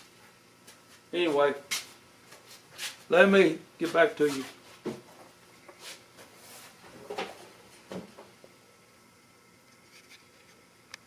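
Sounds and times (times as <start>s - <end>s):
quiet room hiss: 0.0s - 11.0s.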